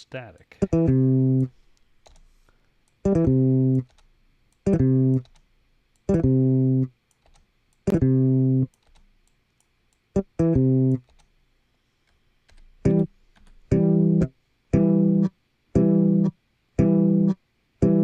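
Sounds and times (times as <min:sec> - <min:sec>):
plucked string notes: 0:00.6 - 0:01.5, 0:03.1 - 0:03.8, 0:04.7 - 0:05.2, 0:06.1 - 0:06.9, 0:07.9 - 0:08.7, 0:10.2 - 0:11.0, 0:12.9 - 0:13.1, 0:13.7 - 0:18.0
sharp clicks: 0:01.8 - 0:03.1, 0:03.8 - 0:06.2, 0:07.1 - 0:08.0, 0:08.6 - 0:10.1, 0:11.0 - 0:11.3.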